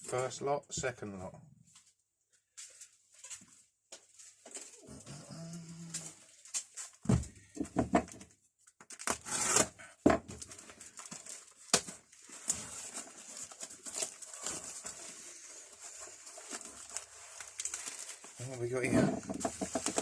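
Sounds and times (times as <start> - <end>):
packaging rustling: 10.3 - 18.7.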